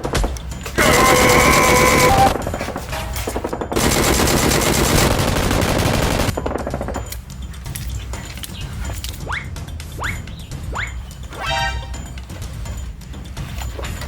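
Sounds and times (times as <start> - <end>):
rapid automatic gunfire: 0.8 - 2.6, 3.3 - 7.0.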